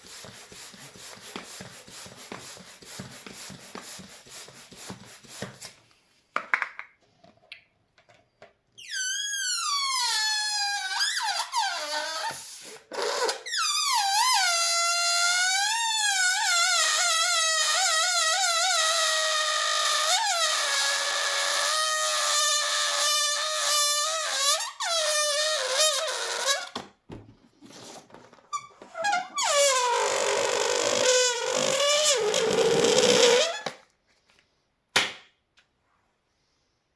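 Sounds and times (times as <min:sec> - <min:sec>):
balloon deflating squeal: 0:08.8 - 0:26.8, 0:28.5 - 0:33.8.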